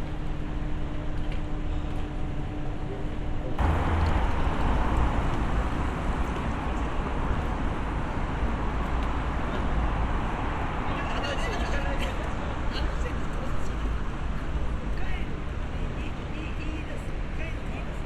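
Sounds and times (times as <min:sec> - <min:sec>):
road traffic rushing: 0:03.6 - 0:14.7.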